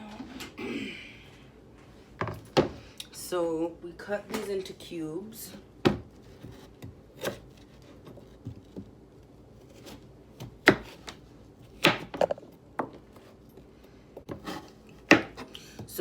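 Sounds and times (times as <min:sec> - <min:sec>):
knife chopping on cutting board: 0:05.8 - 0:08.9, 0:09.6 - 0:13.0, 0:14.2 - 0:16.0.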